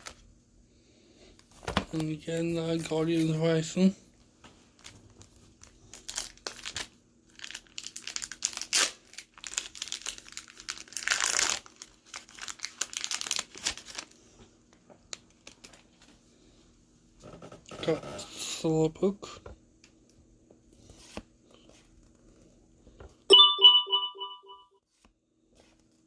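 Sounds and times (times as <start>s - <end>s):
foil wrapper crinkling and tearing: 1.9s - 3.4s, 4.7s - 14.3s, 15.1s - 16.0s.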